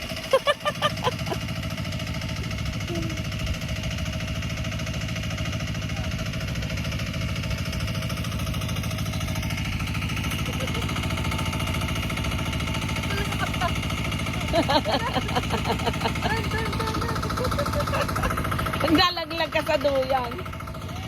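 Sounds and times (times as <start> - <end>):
small engine running: 0.0 - 21.0.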